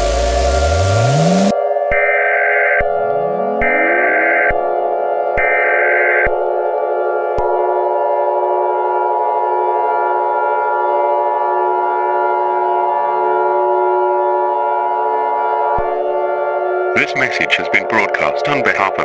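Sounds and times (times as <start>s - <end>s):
electronic alert tone chord: 0.0s - 1.6s, 2.9s - 5.3s.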